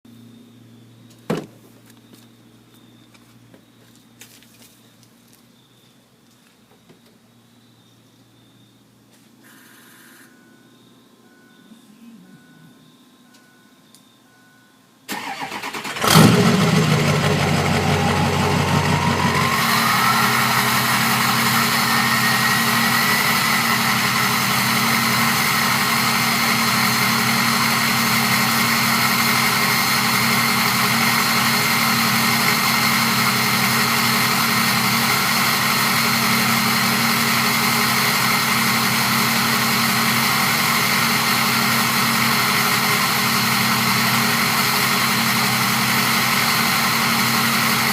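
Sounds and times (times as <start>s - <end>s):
diesel engine starting and idling: 15.1s - 47.9s
turbo whistle: 17.8s - 26.6s.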